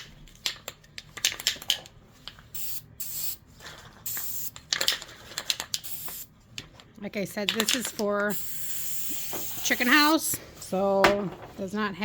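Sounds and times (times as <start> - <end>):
spray can hissing: 2.6 - 3.4, 4.0 - 4.6, 5.8 - 6.3, 8.3 - 10.2.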